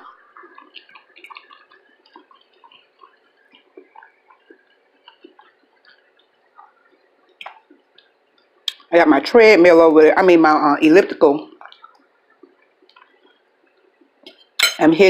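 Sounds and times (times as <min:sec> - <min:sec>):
person chewing food: 0:00.0 - 0:08.9, 0:11.6 - 0:14.6.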